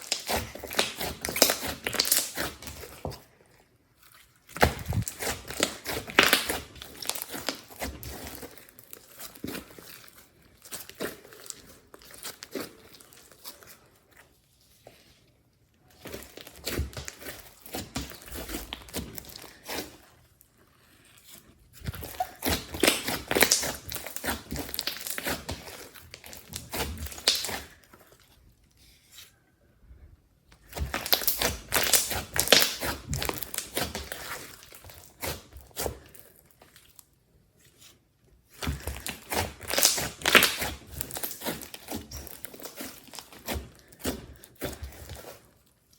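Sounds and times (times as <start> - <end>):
slime squeezed by hand crackling: 0.0 - 3.0, 4.0 - 13.7, 21.2 - 28.0, 30.6 - 36.9, 38.5 - 45.4.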